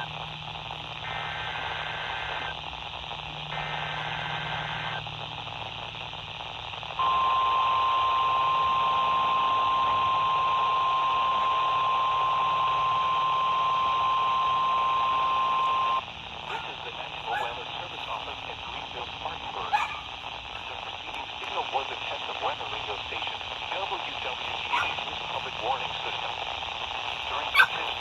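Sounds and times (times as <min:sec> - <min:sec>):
radio static hiss: 0:00.0 - 0:28.0
steady alarm tone: 0:24.3 - 0:26.0.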